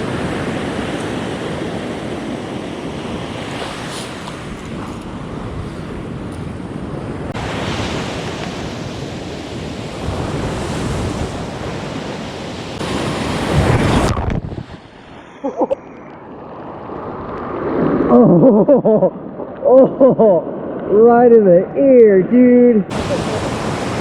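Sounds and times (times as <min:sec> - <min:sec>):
wind buffeting microphone: 0:00.0 - 0:15.1
ocean surf breaking on beach: 0:00.0 - 0:21.9, 0:22.6 - 0:24.0
person speaking: 0:19.7 - 0:23.4.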